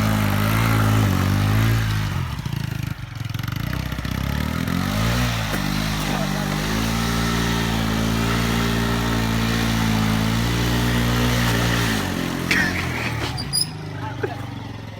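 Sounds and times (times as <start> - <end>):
moped engine revving: 0.0 - 14.9
high squeak: 12.5 - 14.0.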